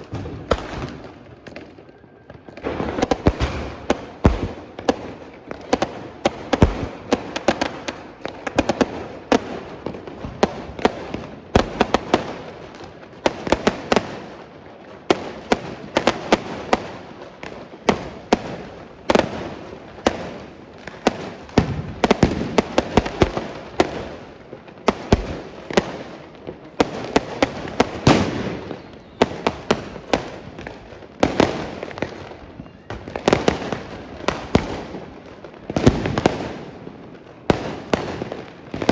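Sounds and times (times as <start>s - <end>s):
firecrackers banging: 0.0s - 14.3s, 15.6s - 38.9s.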